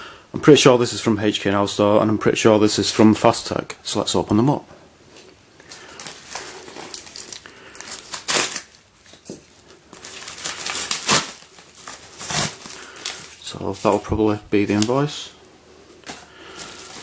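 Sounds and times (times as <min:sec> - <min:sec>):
packaging crinkling and crumpling: 0:05.7 - 0:15.2, 0:16.0 - 0:17.0
packaging ripping: 0:06.0 - 0:08.8, 0:09.5 - 0:14.0, 0:16.0 - 0:17.0.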